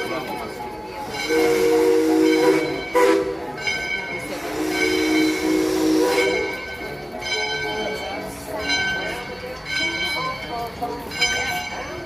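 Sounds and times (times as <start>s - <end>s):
steam locomotive chime whistle: 0.0s - 8.2s.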